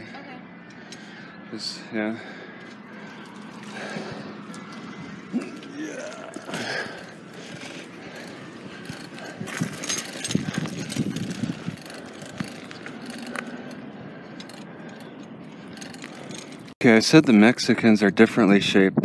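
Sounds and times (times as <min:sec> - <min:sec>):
mechanical clicking and rattling: 0:07.0 - 0:16.8.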